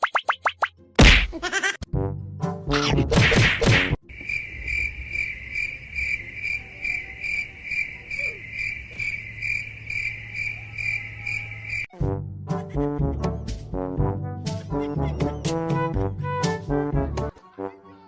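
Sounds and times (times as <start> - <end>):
cricket chirping: 4.0 - 11.9.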